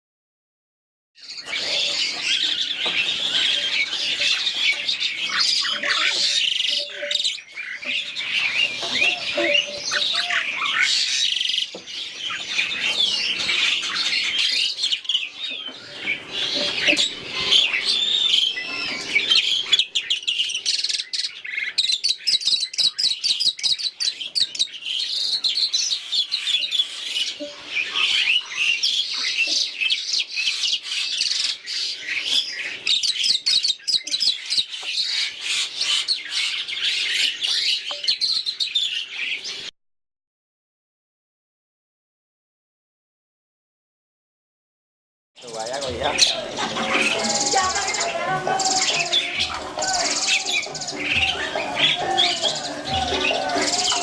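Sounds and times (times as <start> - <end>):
starlings and mynas calling: 1.2 - 39.7, 45.4 - 54.0
rapid rattling trill: 45.5 - 54.0.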